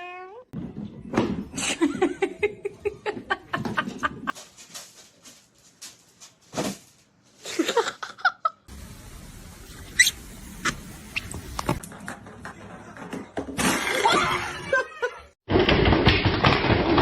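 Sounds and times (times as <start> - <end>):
high-pitched animal calls and chirps: 9.7 - 11.4.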